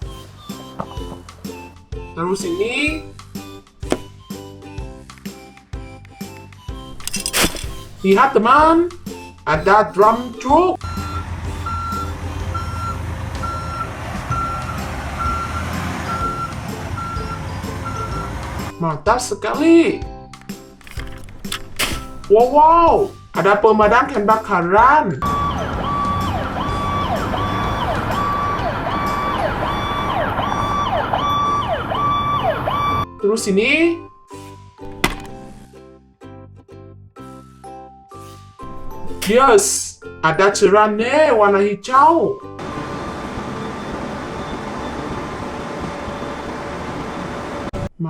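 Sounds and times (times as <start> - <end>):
truck reversing alarm beeping: 9.1 - 18.7, 25.2 - 33.2, 42.5 - 47.7
toy electronic siren: 25.2 - 33.1.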